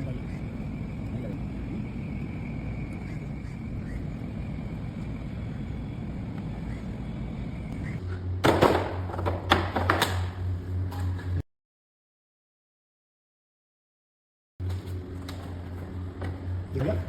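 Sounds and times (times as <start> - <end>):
low hum: 0.0 - 11.4.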